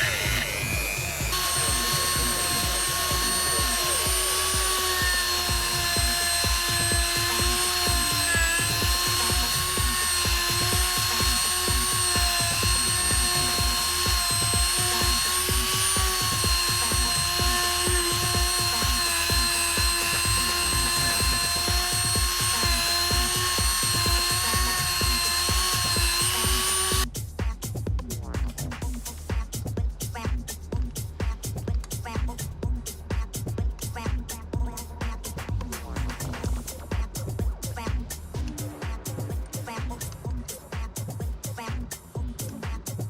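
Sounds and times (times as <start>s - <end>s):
electric power tool running: 0.0s - 27.1s
music with steady beat: 0.0s - 43.0s.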